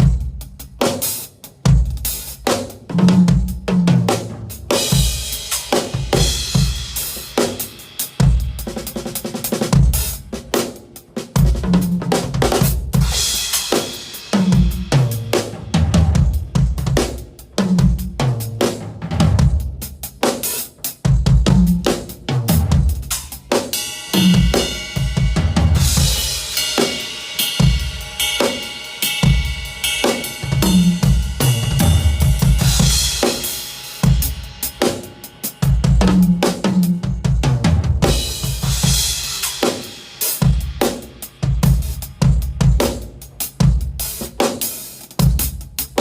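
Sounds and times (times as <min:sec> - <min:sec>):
cymbal crashes: 0:23.6 - 0:43.2
hi-hat: 0:38.4 - 0:46.0.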